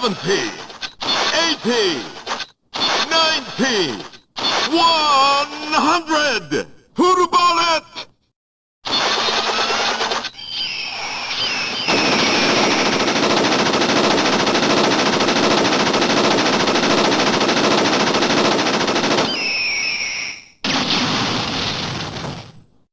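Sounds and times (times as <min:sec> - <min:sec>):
sliding whistles: 0:10.3 - 0:13.0, 0:19.2 - 0:20.6
rapid gatling gun fire: 0:11.9 - 0:19.4.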